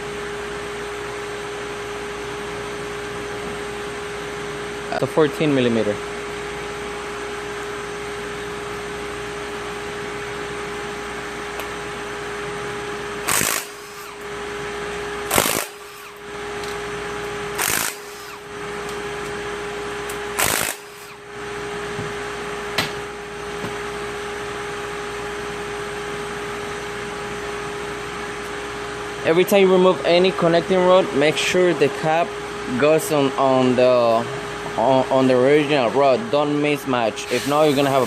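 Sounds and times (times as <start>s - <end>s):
fan hum: 0.0s - 38.0s
power wrench spinning nuts: 13.2s - 14.2s, 15.3s - 16.2s, 17.6s - 18.5s, 20.4s - 21.2s.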